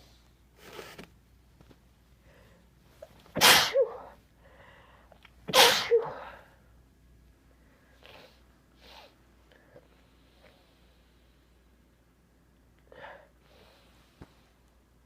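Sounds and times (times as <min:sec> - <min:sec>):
person sneezing: 0:03.4 - 0:04.2, 0:05.5 - 0:06.4
faint breathy sound: 0:04.0 - 0:05.2, 0:12.9 - 0:14.7.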